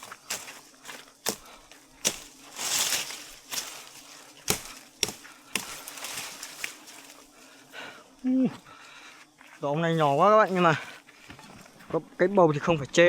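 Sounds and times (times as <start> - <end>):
sharp chopping knocks: 1.2 - 3.8, 4.4 - 6.8.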